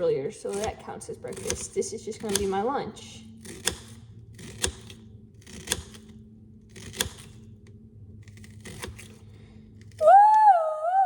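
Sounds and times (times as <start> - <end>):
low steady hum: 0.0 - 11.0
knife chopping onion on board: 0.5 - 2.7.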